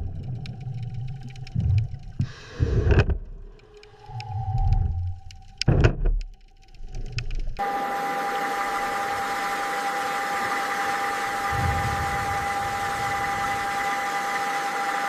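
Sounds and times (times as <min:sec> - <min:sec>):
machine hum with high whine: 0:00.0 - 0:15.0
clicks: 0:00.2 - 0:07.6
low rumbling thuds: 0:05.6 - 0:06.2.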